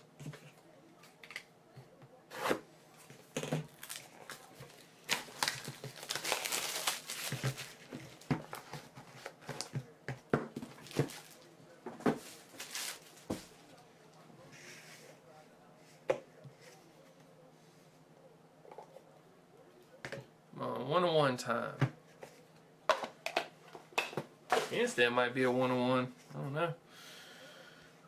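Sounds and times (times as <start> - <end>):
plastic wrapping tearing and crinkling: 3.7 - 8.3, 12.5 - 13.2.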